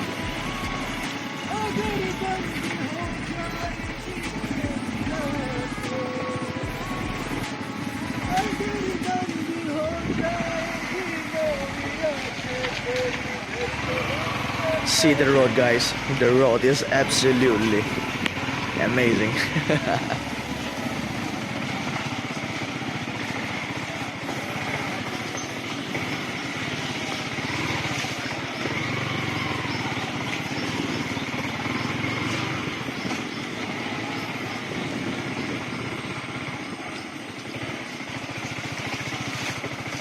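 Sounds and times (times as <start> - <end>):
motorcycle engine running: 0.0 - 40.0.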